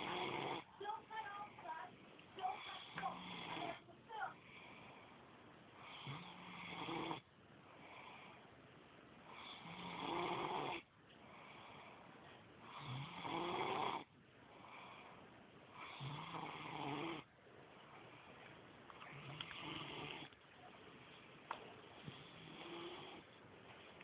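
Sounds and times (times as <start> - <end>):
loud snores: 0.0 - 0.7, 2.8 - 3.8, 5.8 - 7.2, 9.3 - 10.9, 12.7 - 14.1, 15.8 - 17.3, 19.1 - 20.3, 22.2 - 23.2
quiet breaths: 0.0 - 24.0.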